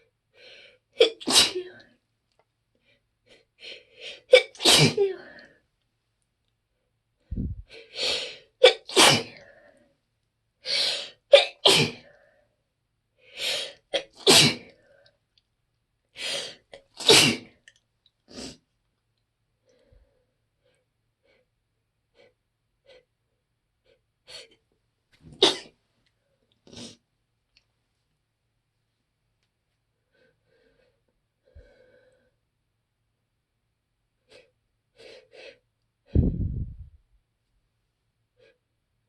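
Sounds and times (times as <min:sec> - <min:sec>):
person sneezing: 0:01.0 - 0:01.8, 0:04.3 - 0:05.3, 0:08.1 - 0:09.4, 0:11.3 - 0:12.0, 0:14.0 - 0:14.7, 0:17.0 - 0:17.5, 0:25.3 - 0:25.7.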